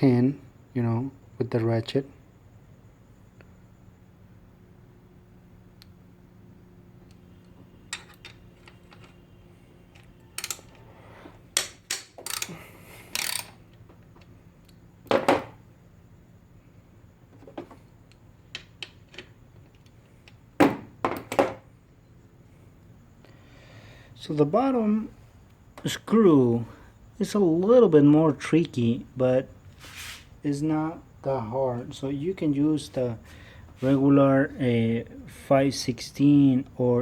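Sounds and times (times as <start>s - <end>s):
ratchet clinking on metal: 10.0s - 10.7s, 11.6s - 13.7s.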